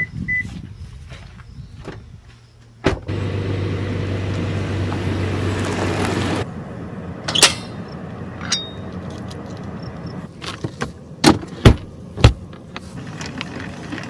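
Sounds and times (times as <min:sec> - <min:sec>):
metallic ring: 0:07.3 - 0:09.0.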